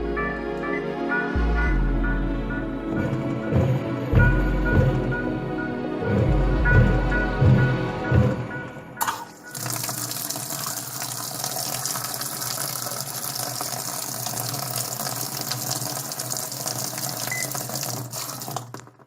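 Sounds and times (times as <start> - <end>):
water running: 9.0 - 19.0.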